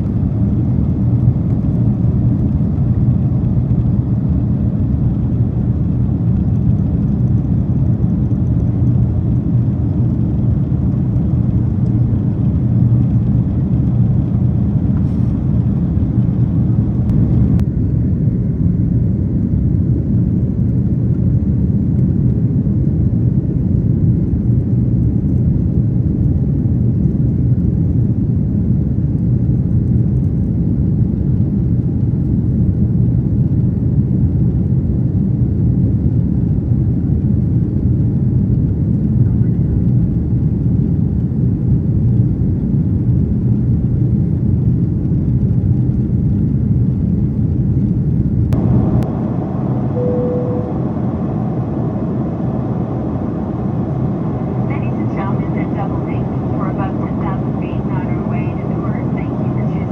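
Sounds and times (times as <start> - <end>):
aircraft engines and airflow rumble: 0.0 - 59.9.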